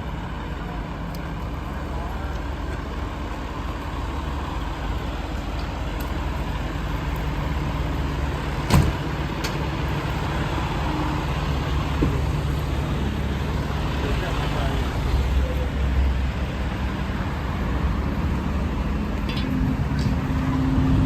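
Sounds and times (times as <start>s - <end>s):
fire engine idling: 0.0s - 21.0s
sharp thump: 8.7s - 9.0s.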